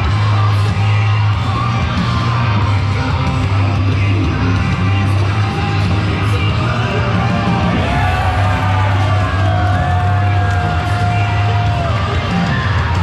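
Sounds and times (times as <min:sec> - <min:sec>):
loud music with heavy bass: 0:00.0 - 0:13.0
crowd yelling and whooping: 0:05.5 - 0:13.0.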